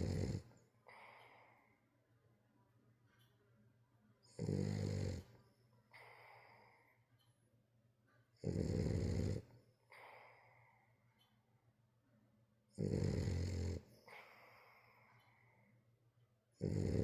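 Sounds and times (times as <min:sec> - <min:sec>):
dog snoring: 0:00.0 - 0:01.2, 0:04.2 - 0:05.4, 0:08.4 - 0:10.5, 0:12.7 - 0:15.0, 0:16.6 - 0:17.0
dog breathing: 0:00.0 - 0:01.9, 0:08.4 - 0:11.0, 0:12.8 - 0:15.8.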